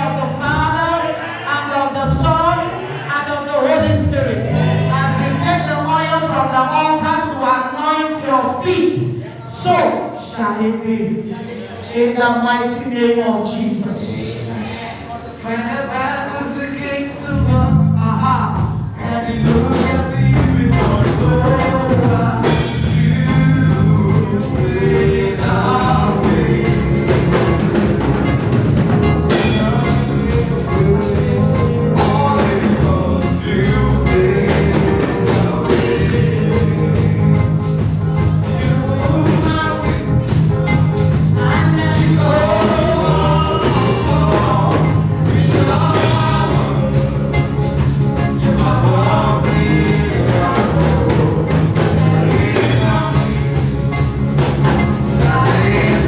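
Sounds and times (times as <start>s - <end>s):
gospel singing: 0.0s - 56.0s
band beat of drums: 17.5s - 56.0s.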